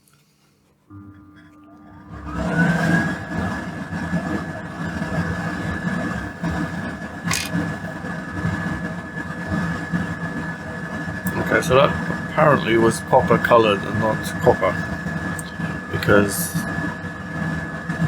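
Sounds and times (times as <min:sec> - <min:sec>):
extractor fan motor whining: 0:01.7 - 0:18.0
sharp click: 0:07.3 - 0:07.6.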